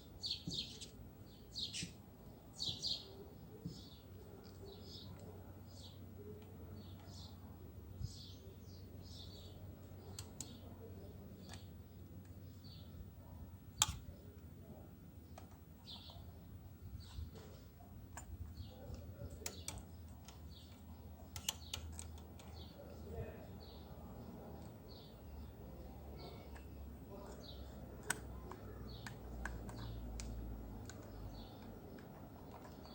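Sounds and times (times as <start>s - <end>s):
faint low hum: 0.0s - 32.9s
small birds chirping: 0.0s - 32.9s
clicks of small parts handled: 13.8s - 14.1s.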